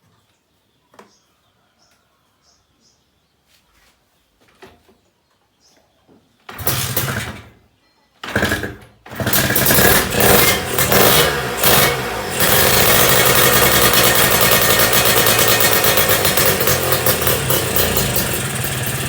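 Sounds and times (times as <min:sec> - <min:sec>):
motorcycle engine starting and revving: 0:06.5 - 0:07.6, 0:08.2 - 0:19.0.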